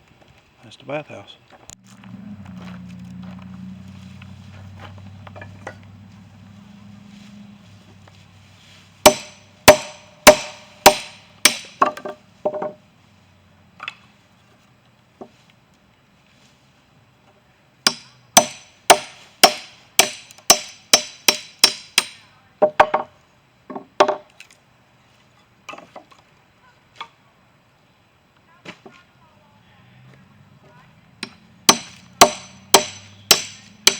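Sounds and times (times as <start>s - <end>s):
axe chopping kindling wood: 9.0s - 12.7s, 17.9s - 23.1s, 31.2s - 33.9s.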